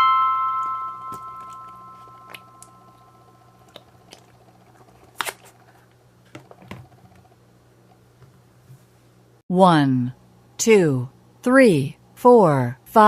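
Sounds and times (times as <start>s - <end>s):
chime-like note: 0.0s - 3.3s
soft squishes: 0.6s - 7.2s.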